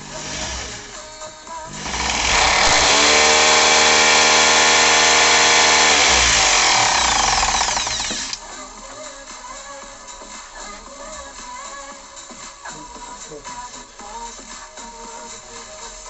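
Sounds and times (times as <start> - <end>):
rotary hammer motor: 0.0 - 1.0, 1.7 - 8.4.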